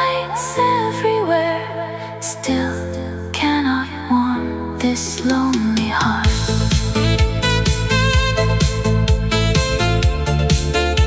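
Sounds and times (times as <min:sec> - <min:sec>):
synthwave music: 0:06.2 - 0:11.0.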